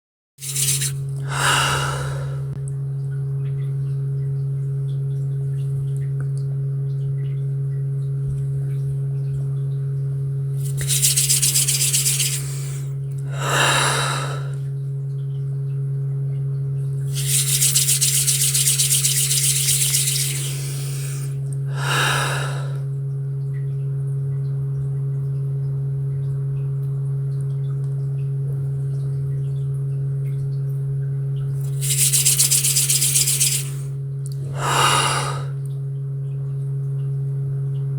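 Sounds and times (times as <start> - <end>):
hands rubbing together: 0.4 - 2.2, 10.6 - 14.5, 17.1 - 22.7, 31.6 - 33.9, 34.6 - 35.5
soft breaths blowing: 0.4 - 2.6, 10.6 - 14.6, 19.0 - 22.9, 31.7 - 35.6.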